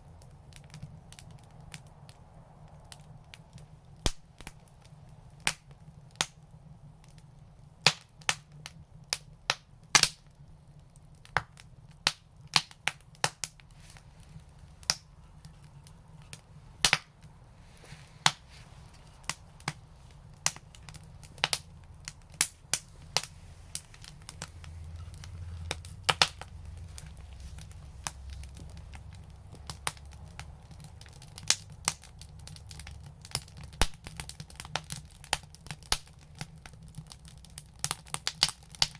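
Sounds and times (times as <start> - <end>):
wood fire crackling: 0.0 - 38.9
low rumble: 18.4 - 30.2.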